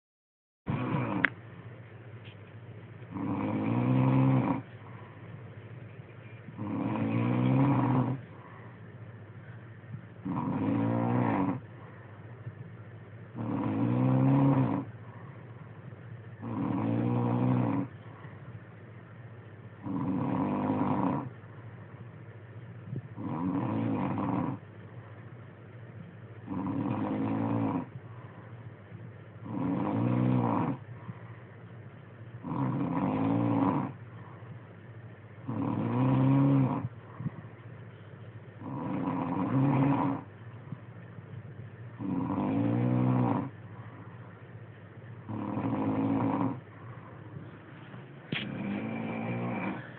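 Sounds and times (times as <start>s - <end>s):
low-pitched snore: 0.7s - 1.3s, 3.1s - 4.7s, 6.6s - 8.5s, 10.2s - 11.7s, 13.4s - 15.4s, 16.4s - 18.0s, 19.8s - 21.3s, 22.9s - 24.6s, 26.5s - 28.4s, 29.4s - 31.3s, 32.4s - 34.5s, 35.4s - 37.5s, 38.6s - 40.3s, 42.0s - 44.1s, 45.2s - 47.2s, 48.3s - 49.9s
person snoring: 0.7s - 1.3s, 3.2s - 4.6s, 6.6s - 8.2s, 10.2s - 11.6s, 13.4s - 14.9s, 19.8s - 21.3s, 35.5s - 36.9s, 45.3s - 47.1s, 48.3s - 49.9s
quiet breathing: 4.6s - 6.6s, 8.0s - 10.2s, 11.6s - 13.3s, 14.8s - 16.4s, 17.8s - 19.8s, 27.8s - 29.4s, 30.8s - 32.1s, 33.9s - 35.4s, 36.8s - 38.6s, 43.4s - 45.3s, 46.4s - 49.9s.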